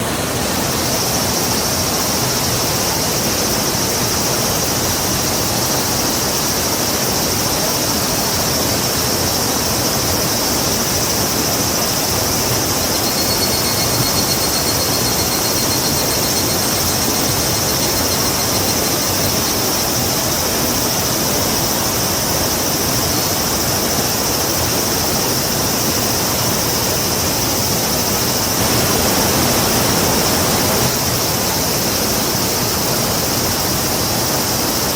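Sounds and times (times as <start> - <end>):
rushing river water: 0.0 - 34.9
high-pitched insect drone: 0.1 - 34.9
faint thin whistling tone: 12.6 - 19.3.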